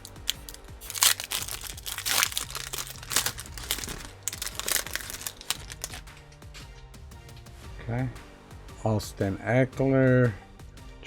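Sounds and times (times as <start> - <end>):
plastic wrapper tearing and crinkling: 0.0 - 6.2.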